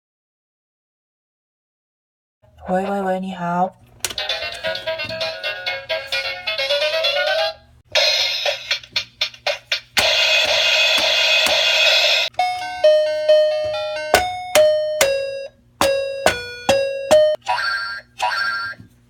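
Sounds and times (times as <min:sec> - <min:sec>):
bright electronic chime tones: 0:12.4 - 0:17.4
electronic drum and cymbal hits: 0:13.7 - 0:17.4.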